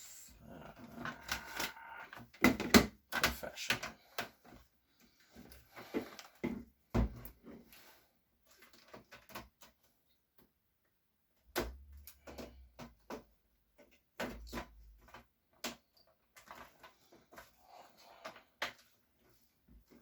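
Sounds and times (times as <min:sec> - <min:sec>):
laptop parts clicking and knocking: 0:00.9 - 0:04.6, 0:11.4 - 0:17.6.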